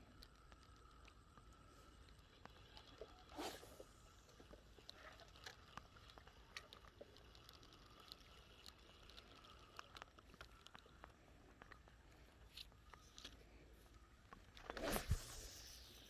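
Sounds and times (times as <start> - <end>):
faint clicks and ticks: 0.0 - 16.0
noisy rustle: 14.6 - 16.0.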